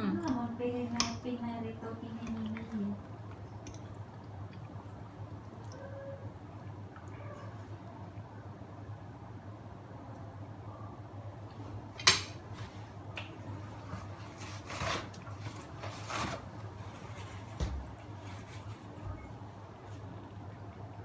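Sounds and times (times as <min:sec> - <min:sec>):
scraping and rustling: 0:12.4 - 0:20.1.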